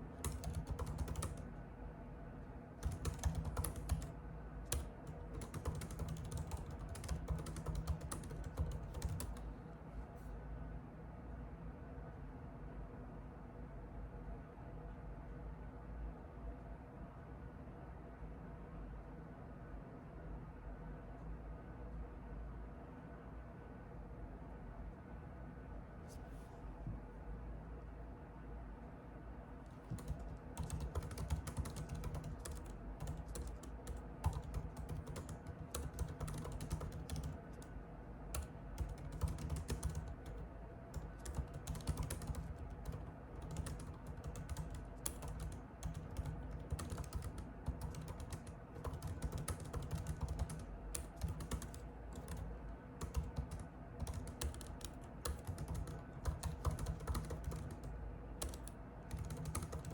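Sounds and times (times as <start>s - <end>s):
keyboard typing clicks: 0.2s - 1.4s, 2.8s - 4.1s, 4.7s - 9.4s, 29.8s - 37.7s, 38.4s - 40.4s, 41.0s - 59.9s.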